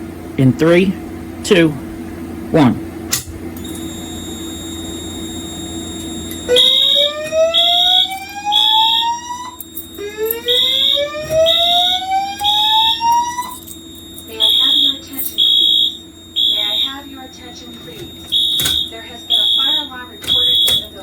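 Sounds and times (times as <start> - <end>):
steady hum: 0.0 - 21.0
high-pitched alarm beeps: 3.6 - 21.0
rising whoop alarm tone: 3.8 - 13.6, 14.2 - 21.0.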